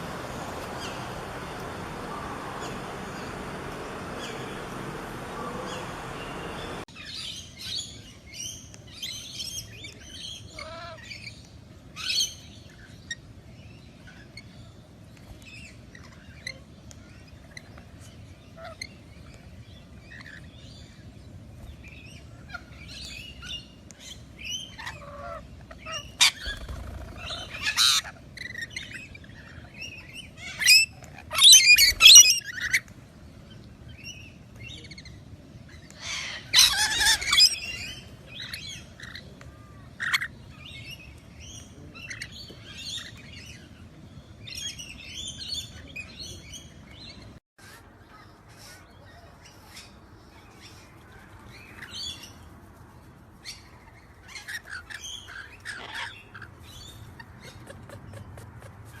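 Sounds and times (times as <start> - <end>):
parrots chirping: 0.0 - 6.9
parrots squawking harshly: 36.1 - 37.5.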